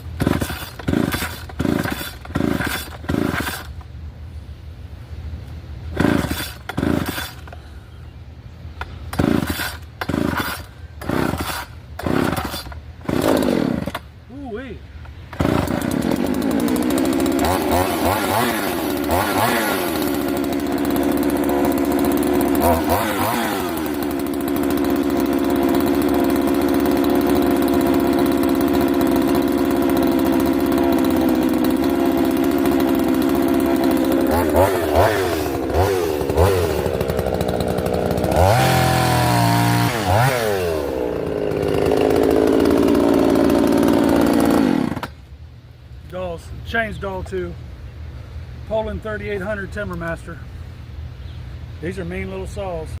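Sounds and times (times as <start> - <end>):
chainsaw idling and revving: 0.0 - 3.9, 5.9 - 7.6, 8.8 - 45.2.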